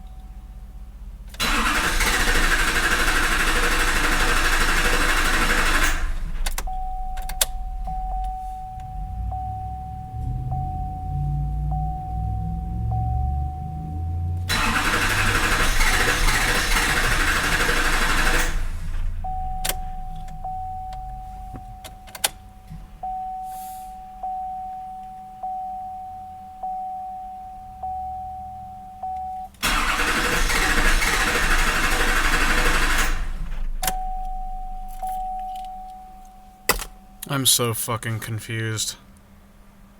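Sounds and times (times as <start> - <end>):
engine cranking without starting: 1.3 - 7.9, 14.5 - 20.5, 29.6 - 34.0
dashboard warning chime: 4.7 - 30.9, 32.6 - 38.9.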